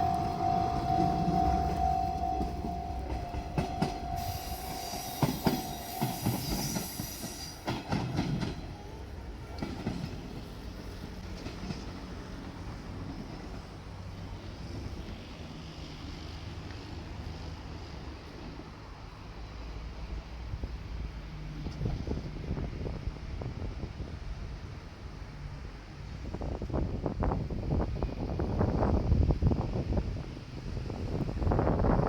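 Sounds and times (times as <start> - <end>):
crossing warning tone: 0.0 - 8.0
train wheels squealing: 0.0 - 9.0
train wheels clicking over rail joints: 0.0 - 15.3
train rumble: 0.0 - 32.0.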